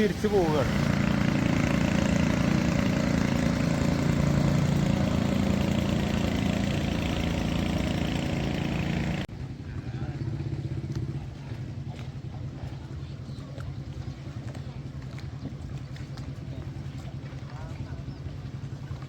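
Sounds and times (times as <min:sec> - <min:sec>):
road noise: 0:00.0 - 0:09.3
vehicle engine running: 0:00.0 - 0:19.0.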